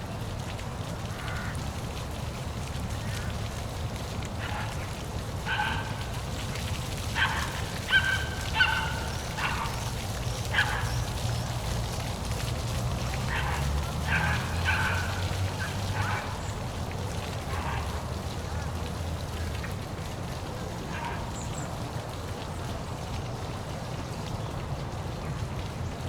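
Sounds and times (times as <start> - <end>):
waterfall rushing: 3.8 - 19.2.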